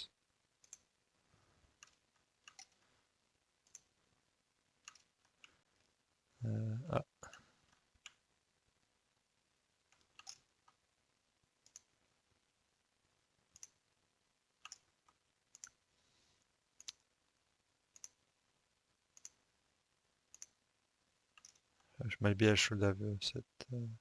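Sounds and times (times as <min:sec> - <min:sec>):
computer mouse clicks: 0:00.6 - 0:00.9, 0:01.7 - 0:02.9, 0:03.6 - 0:04.0, 0:04.8 - 0:05.9, 0:07.3 - 0:08.3, 0:09.9 - 0:10.8, 0:11.6 - 0:12.0, 0:13.5 - 0:13.8, 0:14.6 - 0:15.9, 0:16.7 - 0:17.2, 0:17.9 - 0:18.3, 0:19.1 - 0:19.5, 0:20.3 - 0:20.6, 0:21.4 - 0:21.7.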